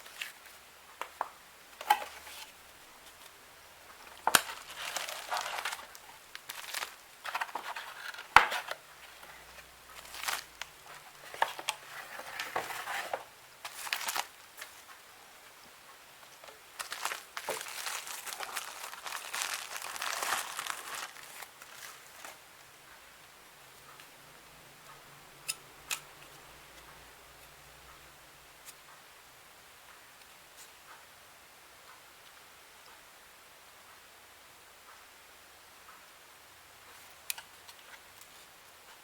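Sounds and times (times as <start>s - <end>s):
wrapping crinkling: 4.1s - 9.3s, 9.9s - 14.8s, 16.8s - 22.4s.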